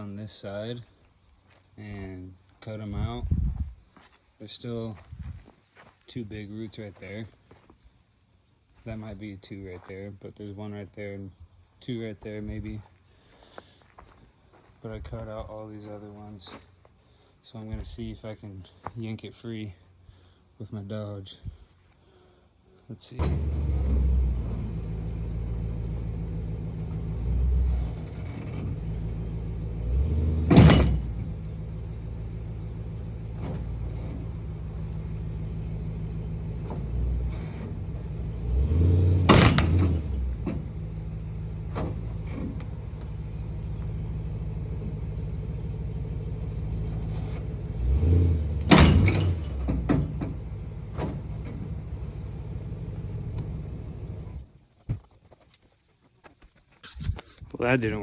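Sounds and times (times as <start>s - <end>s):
truck engine revving under load: 23.2s - 54.5s
sharp bang: 30.5s - 31.2s, 39.3s - 40.2s, 48.7s - 49.7s.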